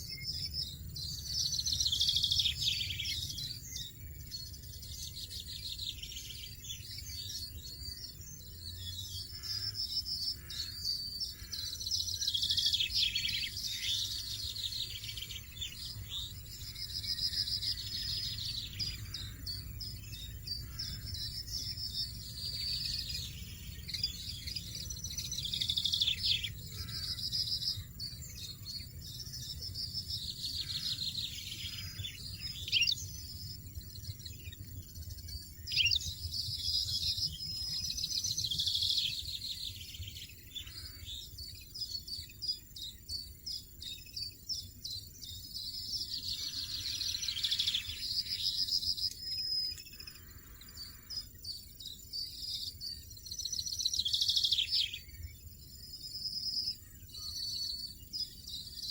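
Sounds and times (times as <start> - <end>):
finches twittering: 0.0 - 58.9.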